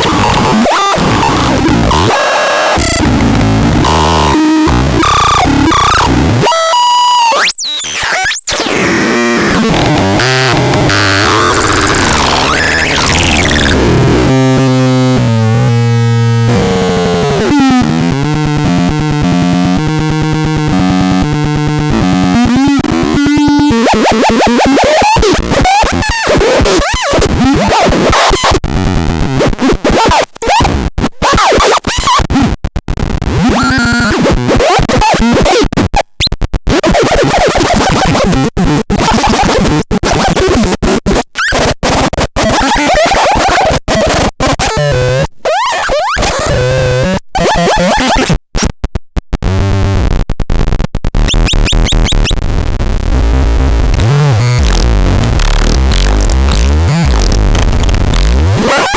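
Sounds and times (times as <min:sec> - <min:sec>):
harsh glitchy electronic noise: 0:00.0 - 0:48.7, 0:49.4 - 0:58.9.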